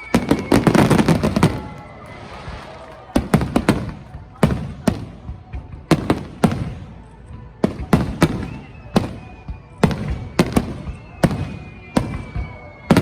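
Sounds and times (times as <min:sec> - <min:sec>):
faint high falling whistle: 0:00.0 - 0:03.2, 0:08.4 - 0:13.0
fireworks bangs with rumbling echo: 0:00.0 - 0:13.0.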